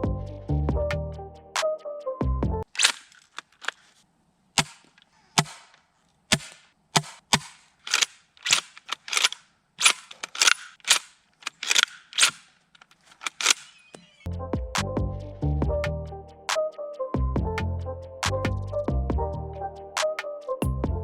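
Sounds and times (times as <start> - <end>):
rifle bolt clicks: 2.7 - 3.8, 4.6 - 14.0
airsoft rifle shots: 4.6 - 12.5.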